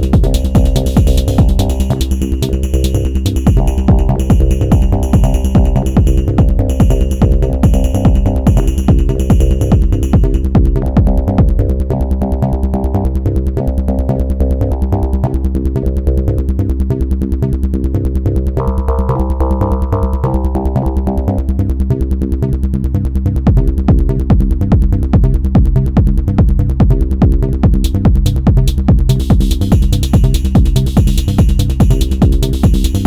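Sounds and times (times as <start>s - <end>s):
bright high percussion: 0.0s - 10.8s, 28.6s - 33.0s
synth lines: 0.0s - 11.6s
electronic techno beat: 0.0s - 12.0s, 23.5s - 33.0s.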